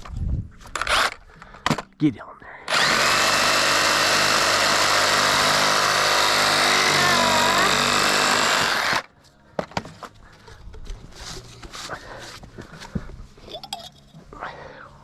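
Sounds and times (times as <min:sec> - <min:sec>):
handheld power tool running: 0:00.8 - 0:01.2, 0:02.7 - 0:09.1.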